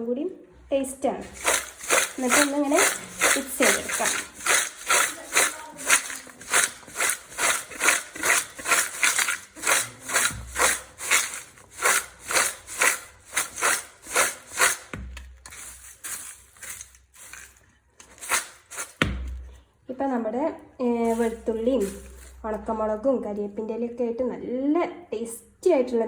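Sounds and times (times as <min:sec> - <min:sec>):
dry snack rustling in a bowl: 0:01.2 - 0:14.9, 0:15.5 - 0:19.0, 0:21.0 - 0:22.5.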